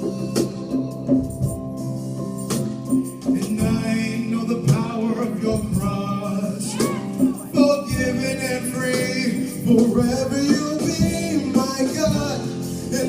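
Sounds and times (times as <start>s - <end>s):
sustained keyboard chords: 0.0s - 13.0s
voices singing: 4.3s - 13.0s.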